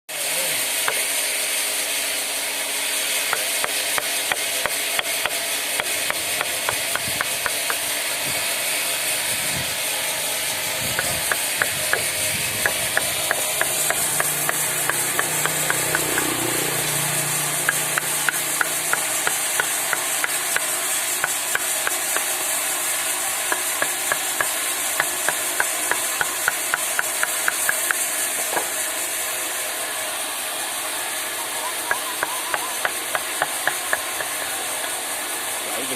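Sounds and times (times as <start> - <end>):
steady hiss: 0.1 - 35.9
chisel tapping into wood: 12.6 - 16.3, 17.7 - 22.3, 23.5 - 28.7.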